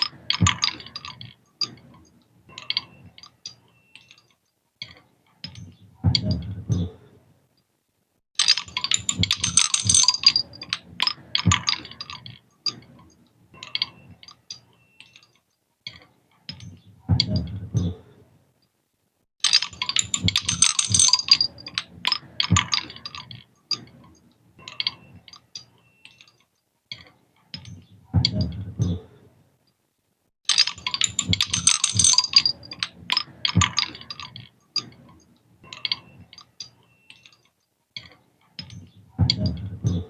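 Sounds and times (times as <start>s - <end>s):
seashells clinking together: 8.4s - 12.4s, 19.4s - 23.4s, 30.5s - 34.9s.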